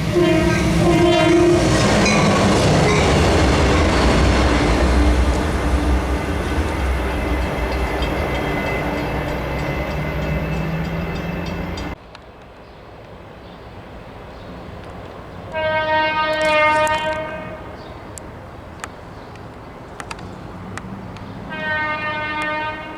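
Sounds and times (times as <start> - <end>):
locomotive air horn: 0.0 - 2.3, 15.5 - 17.8, 21.5 - 22.9
train rumbling past: 0.0 - 22.9.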